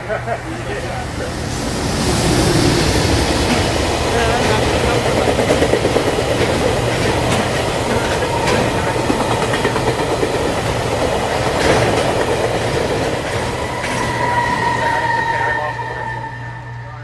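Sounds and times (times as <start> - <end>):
train rumbling by: 0.0 - 17.0
wheels clacking over rail joints: 3.3 - 14.7.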